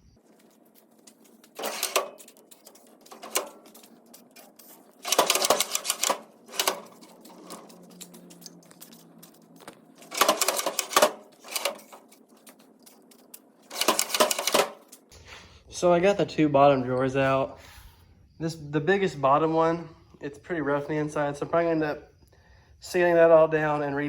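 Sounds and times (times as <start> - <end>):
metal drawers rattling and clattering: 1.0 - 15.0.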